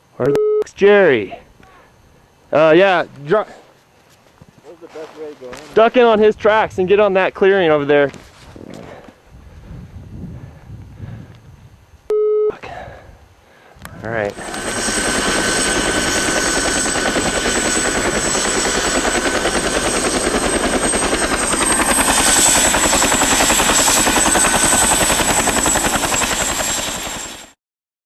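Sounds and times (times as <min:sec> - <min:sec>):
high-pitched turbine whine: 0:00.0 - 0:27.6
helicopter rotor chop: 0:13.9 - 0:27.6.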